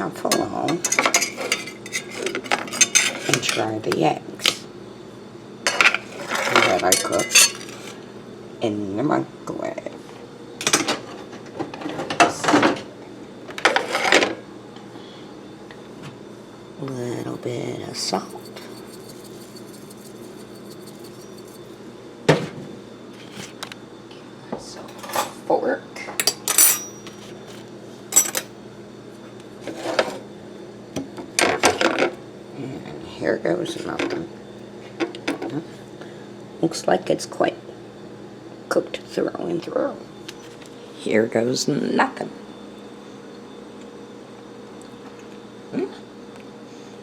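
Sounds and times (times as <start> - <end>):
salt shaker rattling: 17.9 - 21.8
metal fork clinking on plate: 18.1 - 21.8, 26.2 - 27.2.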